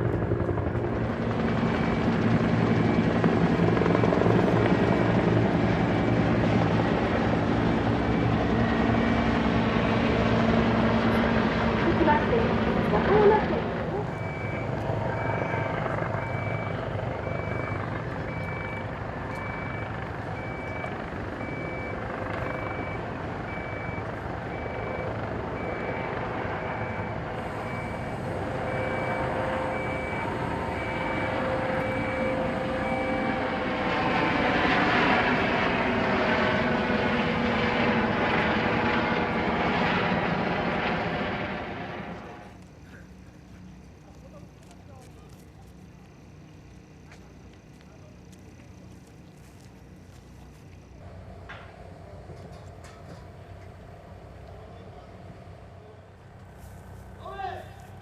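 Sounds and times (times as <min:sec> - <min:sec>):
engine rumble: 0:00.0 - 0:58.0
reversing alarm beeping: 0:01.7 - 0:03.9, 0:08.0 - 0:08.9, 0:14.0 - 0:34.6.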